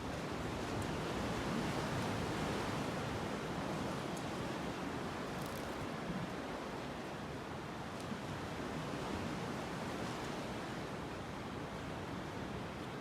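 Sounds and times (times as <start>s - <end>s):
wind: 0.0s - 13.0s
faint small ticks: 5.3s - 5.8s.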